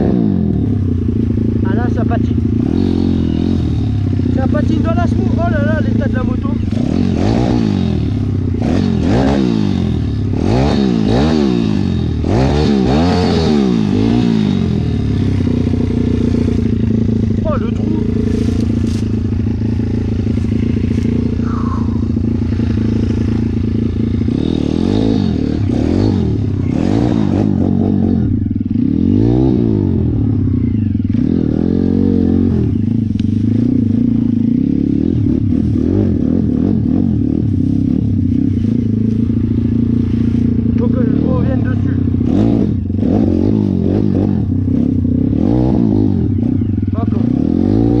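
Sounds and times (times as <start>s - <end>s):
dirt bike engine revving: 0.0s - 48.0s
rear wheel slipping in mud: 18.0s - 21.5s.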